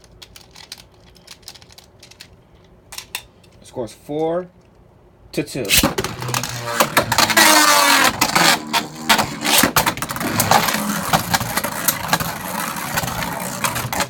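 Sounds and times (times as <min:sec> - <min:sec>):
spinning tops launching rush: 0:05.7 - 0:14.0
spinning tops whirring: 0:05.7 - 0:14.0.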